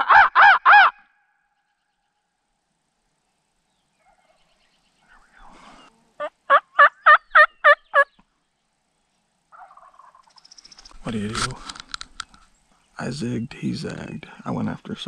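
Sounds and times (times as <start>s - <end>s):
turkey yelps: 0.0s - 1.3s, 6.2s - 8.1s, 9.5s - 10.2s
faint rustle: 1.7s - 6.3s, 8.2s - 13.0s.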